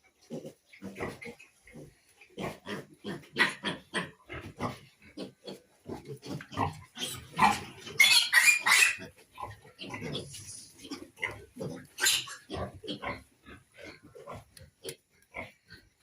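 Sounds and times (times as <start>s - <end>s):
piglets grunting: 0.2s - 16.0s
piglets squealing shrilly: 7.0s - 9.1s, 12.0s - 13.0s.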